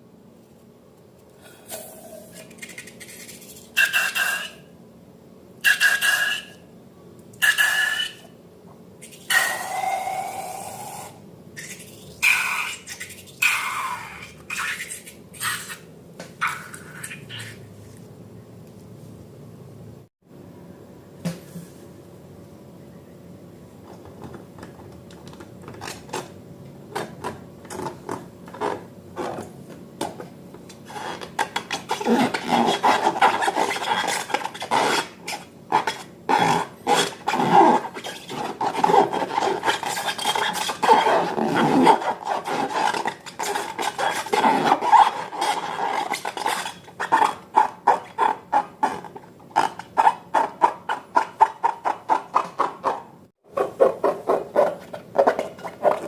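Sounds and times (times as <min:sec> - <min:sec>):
utensil clicking and scraping bowl: 0:30.7 - 0:53.0.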